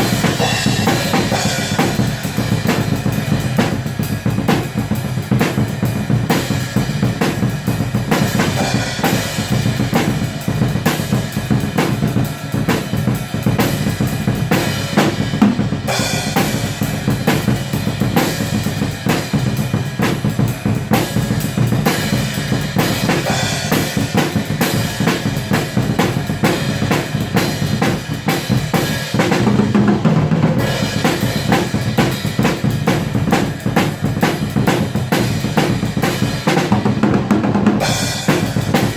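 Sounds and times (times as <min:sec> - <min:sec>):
black metal music: 0:00.0 - 0:06.6, 0:21.2 - 0:38.9
fast bass drum and snare: 0:00.0 - 0:38.9.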